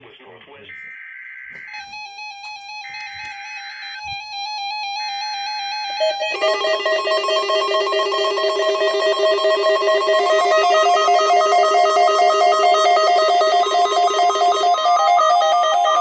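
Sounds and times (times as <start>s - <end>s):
pulsing chord of tones: 6.0s - 16.0s
steady tone: 6.3s - 16.0s.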